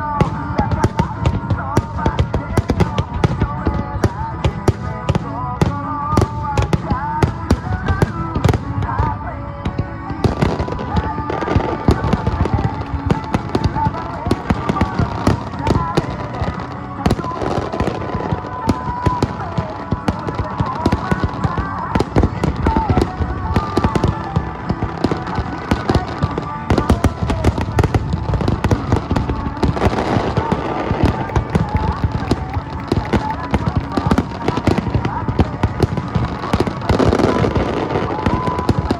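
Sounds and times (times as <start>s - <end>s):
fireworks bangs and crackles: 0.0s - 38.9s
song with singing voice: 0.0s - 38.9s.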